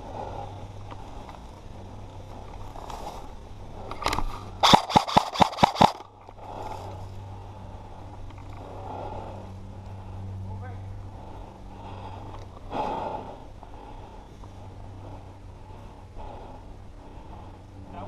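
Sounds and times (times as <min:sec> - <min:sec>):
rustle of person moving: 0:00.7 - 0:04.6, 0:05.7 - 0:08.8
airsoft gun shots: 0:04.6 - 0:06.0.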